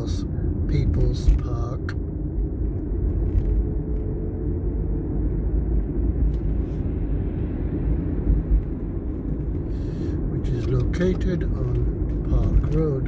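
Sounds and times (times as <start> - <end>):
car road and engine rumble: 0.0 - 13.0.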